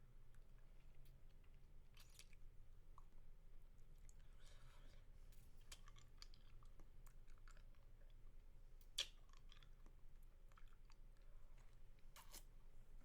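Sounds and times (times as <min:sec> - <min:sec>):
wet mouth clicks and smacks: 0:08.8 - 0:09.7.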